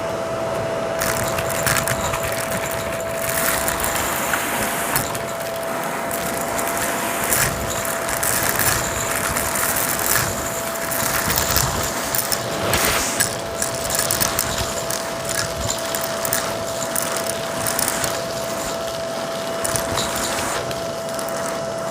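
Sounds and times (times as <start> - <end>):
vacuum cleaner whine: 0.0 - 21.9
debris crackling up vacuum hose: 1.0 - 21.9.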